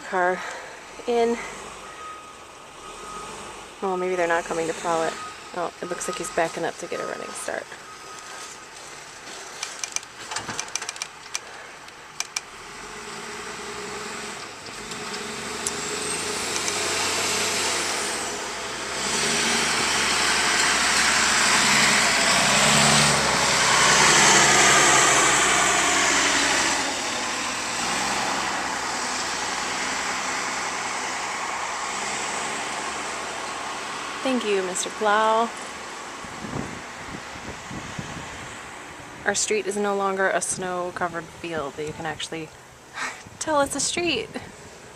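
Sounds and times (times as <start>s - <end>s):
plow blade pushing snow: 0.0s - 11.8s, 12.4s - 44.9s
truck engine accelerating: 0.0s - 44.9s.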